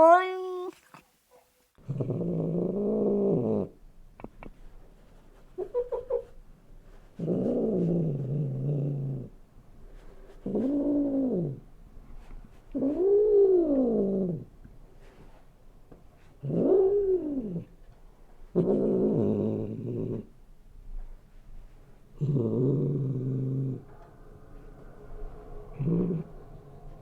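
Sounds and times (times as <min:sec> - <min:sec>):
cat meowing: 0:00.0 - 0:00.8.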